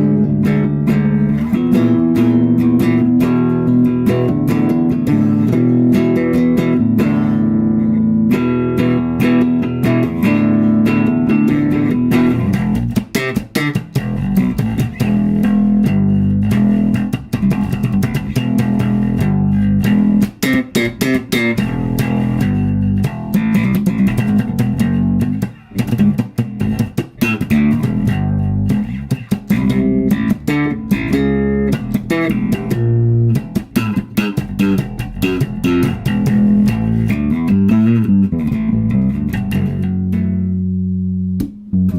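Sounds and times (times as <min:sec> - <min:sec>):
electric bass guitar plucked notes: 0:00.0 - 0:41.9.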